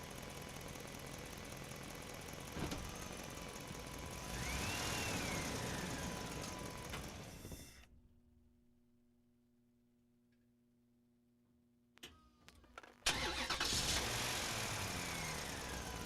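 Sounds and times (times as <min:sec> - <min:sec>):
model truck motor whir: 0:03.7 - 0:07.8, 0:13.1 - 0:16.0.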